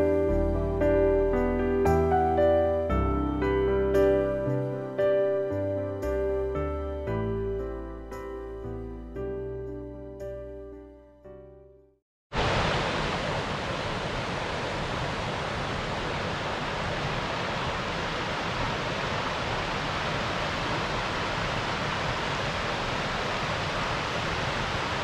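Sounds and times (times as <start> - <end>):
waterfall rushing: 12.4 - 25.0.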